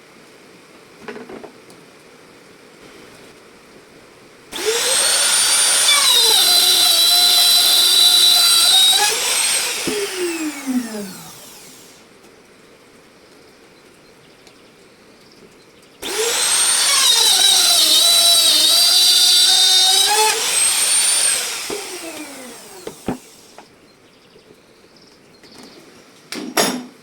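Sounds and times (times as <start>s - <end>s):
router whining cutting wood: 4.5s - 12.0s, 16.0s - 23.7s.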